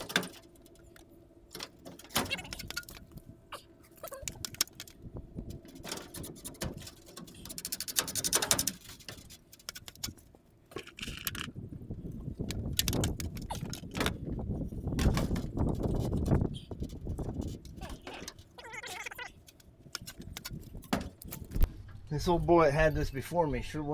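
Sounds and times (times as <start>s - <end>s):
tools clicking and knocking on wood: 0.0s - 21.7s.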